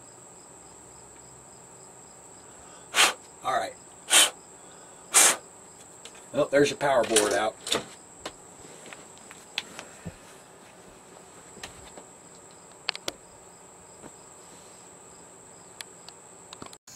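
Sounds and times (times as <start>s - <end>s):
clicks and taps of parts: 12.3s - 13.2s.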